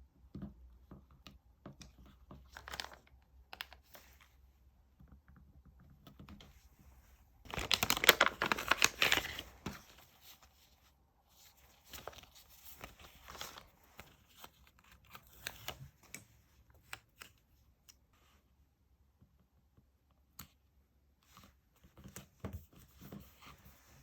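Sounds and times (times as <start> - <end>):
paper crinkling: 2.5 - 4.2, 7.5 - 17.4.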